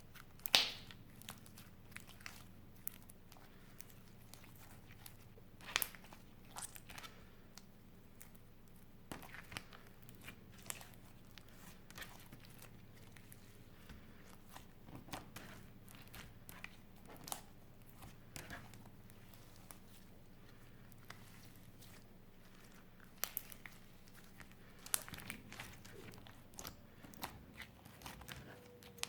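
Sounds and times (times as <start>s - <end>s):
slime squishing with crackles: 0.0s - 29.0s.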